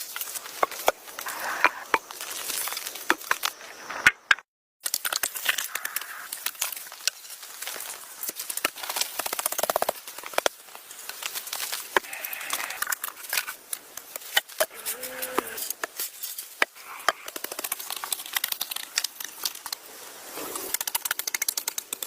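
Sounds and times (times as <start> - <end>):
dry material crackling and rustling: 5.2 - 20.7.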